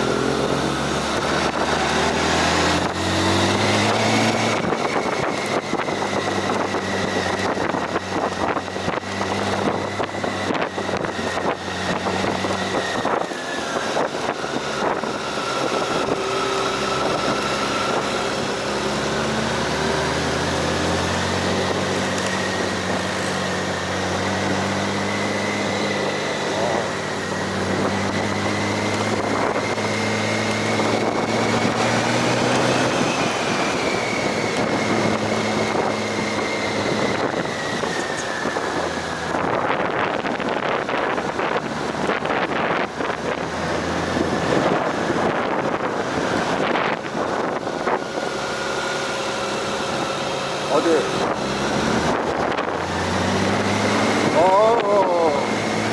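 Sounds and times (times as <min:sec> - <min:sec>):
wind noise on microphone: 0:00.0 - 0:50.3, 0:51.1 - 0:55.9
high engine whine: 0:00.0 - 0:55.9
vehicle engine running: 0:00.0 - 0:55.9.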